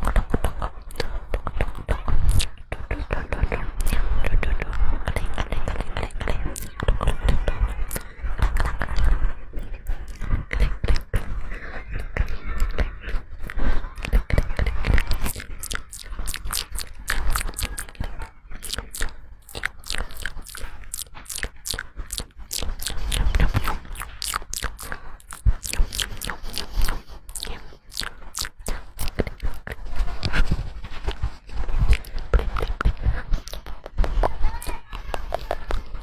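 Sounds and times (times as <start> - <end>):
sharp crunching crackles: 12.2 - 36.0.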